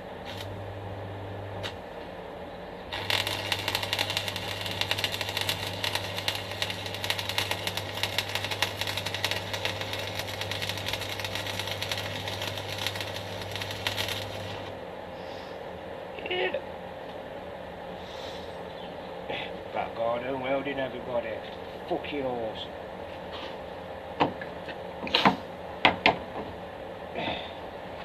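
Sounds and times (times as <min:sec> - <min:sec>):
welding arc crackling and sizzling: 0:00.0 - 0:00.6, 0:02.9 - 0:14.8
welding machine hum: 0:00.0 - 0:02.0, 0:02.8 - 0:14.9.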